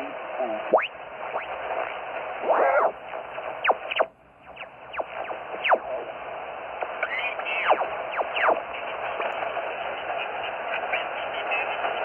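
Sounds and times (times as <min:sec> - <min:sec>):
radio static hiss: 0:00.0 - 0:12.0
sliding radio whistles: 0:00.7 - 0:06.1, 0:06.8 - 0:08.7
garbled radio voice: 0:02.4 - 0:03.0, 0:07.0 - 0:12.0.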